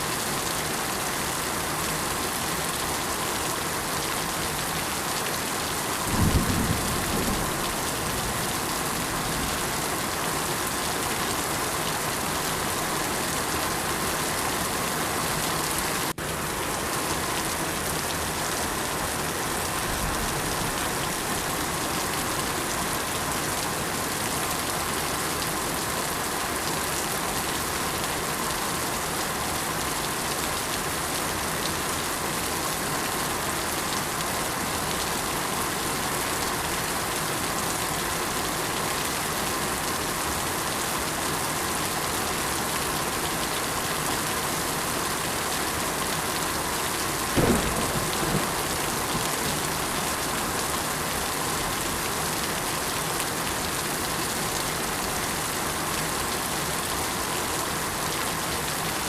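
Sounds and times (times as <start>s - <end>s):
steady rainfall: 0.0s - 59.0s
low rumble of thunder: 6.1s - 9.4s, 47.4s - 50.2s.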